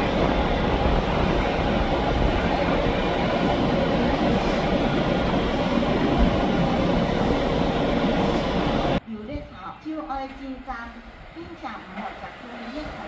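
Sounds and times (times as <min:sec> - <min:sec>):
train wheels rumbling on rails: 0:00.0 - 0:09.0, 0:10.6 - 0:13.0.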